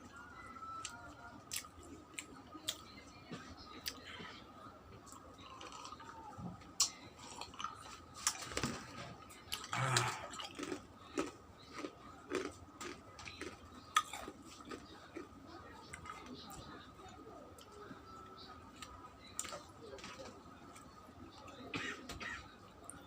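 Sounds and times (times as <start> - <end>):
chewing mouth clicks and smacks: 9.5 - 15.2.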